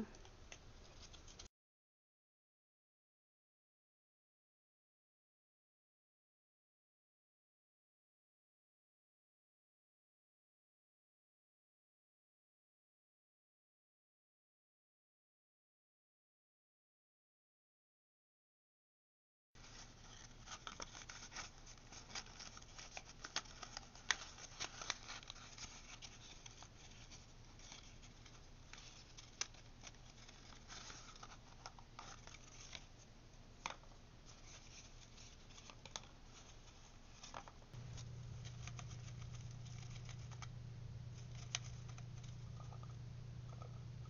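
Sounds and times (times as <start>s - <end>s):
rodents scratching cardboard: 19.6s - 33.0s, 34.3s - 44.0s
low hum: 37.8s - 44.0s.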